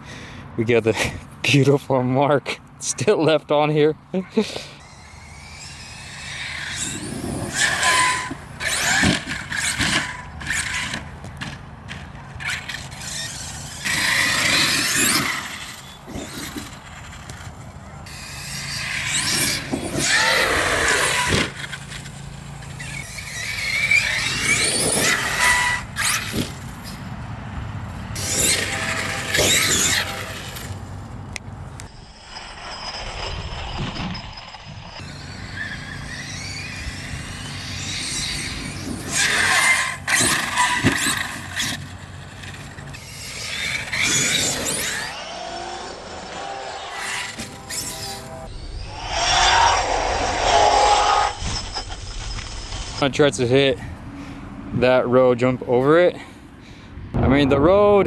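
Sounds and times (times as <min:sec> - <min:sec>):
electric motor whining: 0:04.6 - 0:52.8
tyre noise on ground: 0:06.2 - 0:31.8.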